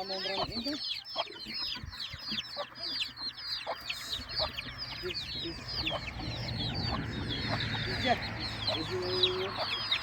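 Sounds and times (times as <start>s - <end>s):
chickens cheeping: 0.0s - 10.0s
chickens clucking: 0.0s - 10.0s.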